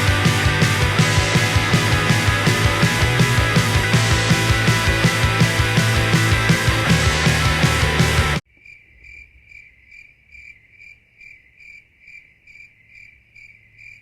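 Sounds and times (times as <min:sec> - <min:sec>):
rock music: 0:00.0 - 0:08.4.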